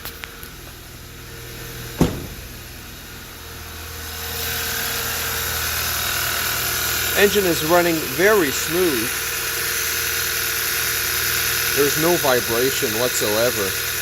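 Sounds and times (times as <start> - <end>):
car engine idling: 0.2 - 3.4
steady whirring: 0.9 - 3.3.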